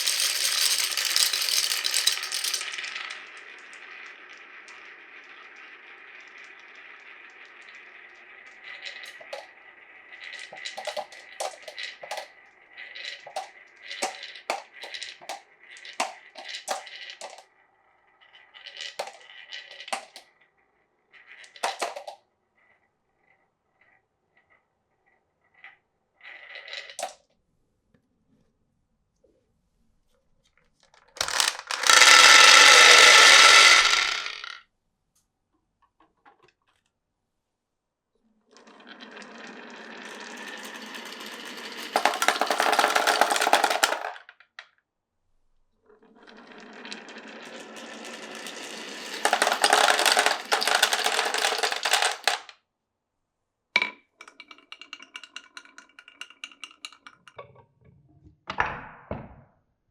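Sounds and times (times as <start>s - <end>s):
marbles rolling on wooden run: 0.0s - 22.2s, 25.6s - 27.2s, 31.0s - 34.6s, 38.6s - 44.5s, 46.2s - 52.6s
knock: 58.5s - 59.5s.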